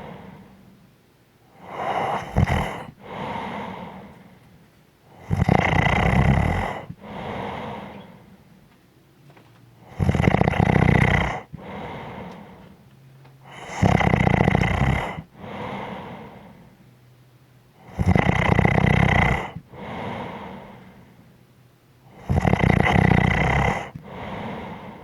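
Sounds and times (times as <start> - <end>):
soft breath out: 0.0 - 0.8, 1.6 - 4.6, 6.6 - 8.6, 11.2 - 12.8, 15.0 - 16.8, 19.4 - 21.3, 23.7 - 25.0
person snoring: 1.5 - 4.3, 5.1 - 8.3, 9.8 - 12.6, 13.5 - 16.7, 17.8 - 21.0, 22.1 - 25.0.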